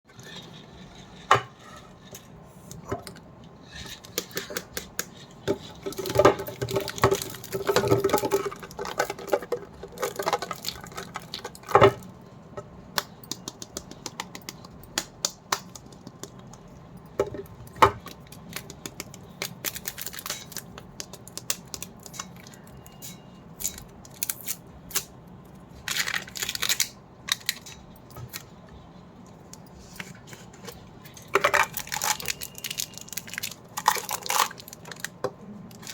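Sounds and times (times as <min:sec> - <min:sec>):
wrapper crinkling: 0:18.2 - 0:22.7, 0:25.8 - 0:28.4, 0:31.3 - 0:35.9.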